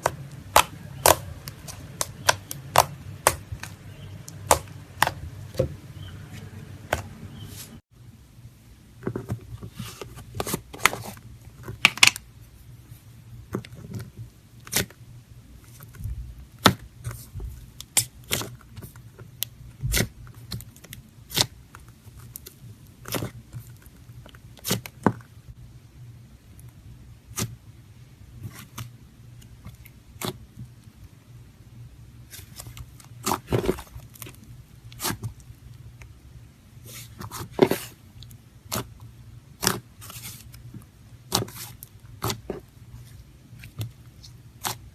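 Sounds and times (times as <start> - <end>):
faint low hum: 0.0 - 44.9.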